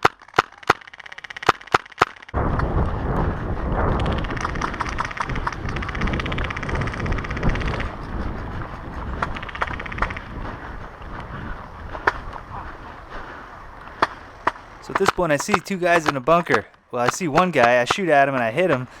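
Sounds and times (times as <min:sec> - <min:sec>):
sharp clicks: 0:00.0 - 0:02.7, 0:04.0 - 0:08.2, 0:09.1 - 0:10.4, 0:13.8 - 0:19.0
wind on microphone: 0:02.4 - 0:16.2.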